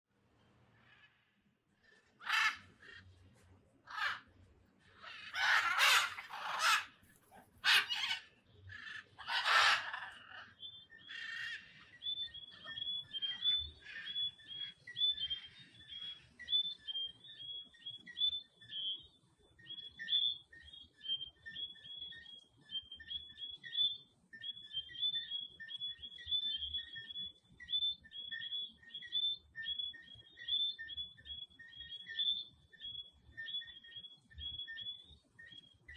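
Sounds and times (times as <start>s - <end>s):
macaws squawking: 2.1s - 3.2s, 3.9s - 4.3s, 4.9s - 11.8s
frogs calling: 2.2s - 3.0s, 3.9s - 4.2s, 5.0s - 7.0s, 7.6s - 17.0s.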